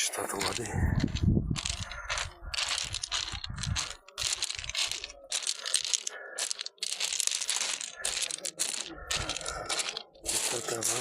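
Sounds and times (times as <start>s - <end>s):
footsteps on beach stones: 0.0s - 11.0s
wind rumble on microphone: 0.7s - 3.9s.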